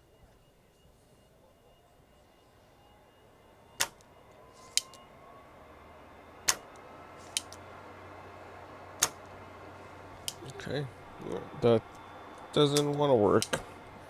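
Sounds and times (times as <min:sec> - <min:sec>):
desoldering pump clicks: 0:03.8 - 0:04.0, 0:04.7 - 0:05.0, 0:06.5 - 0:07.6, 0:09.0 - 0:09.4, 0:10.2 - 0:10.6, 0:11.9 - 0:13.7.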